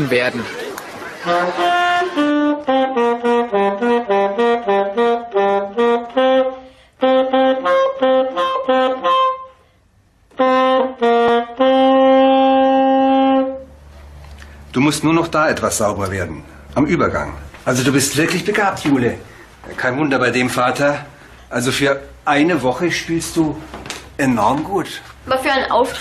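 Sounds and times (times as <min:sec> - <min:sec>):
solo saxophone melody: 0:01.2 - 0:14.2.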